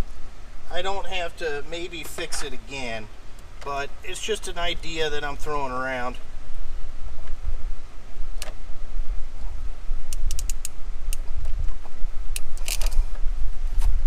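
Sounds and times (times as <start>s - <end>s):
steady low rumble: 0.0s - 14.0s
sharp clicks and metallic rattles: 10.1s - 11.3s.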